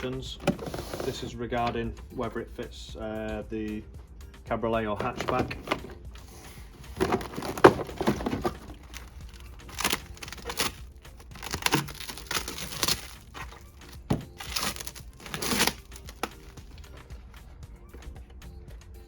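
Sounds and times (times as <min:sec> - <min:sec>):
paper and plastic wrapping rustling: 0:00.2 - 0:01.8, 0:05.0 - 0:17.3.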